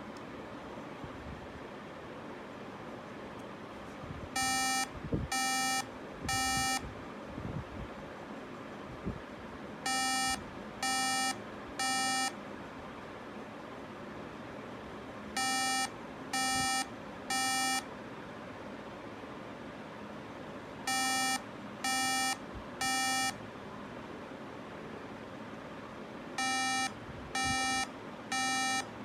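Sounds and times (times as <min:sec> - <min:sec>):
short buzzy beeps: 0:04.4 - 0:06.8, 0:09.9 - 0:12.3, 0:15.4 - 0:17.8, 0:20.9 - 0:23.4, 0:26.4 - 0:28.9.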